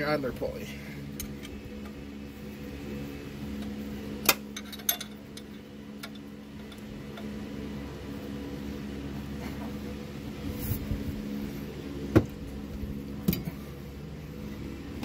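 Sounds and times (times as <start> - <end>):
steady low hum: 0.0 - 15.0
metal tools clinking: 4.5 - 6.8.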